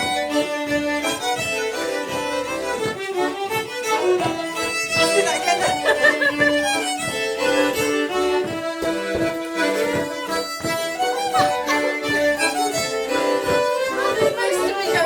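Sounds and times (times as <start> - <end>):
fiddle playing a tune: 0.0 - 15.0
steady beat: 0.0 - 15.0.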